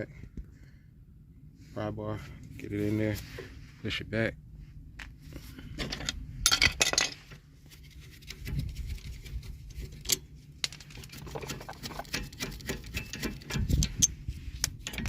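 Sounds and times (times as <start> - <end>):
pry bar clicking and scraping metal: 8.0 - 15.0.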